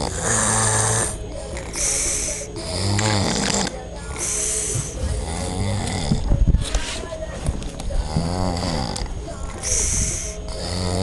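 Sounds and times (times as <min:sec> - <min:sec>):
man snoring: 0:00.0 - 0:01.2, 0:02.4 - 0:03.7, 0:05.2 - 0:06.3, 0:08.0 - 0:09.1, 0:10.2 - 0:11.0.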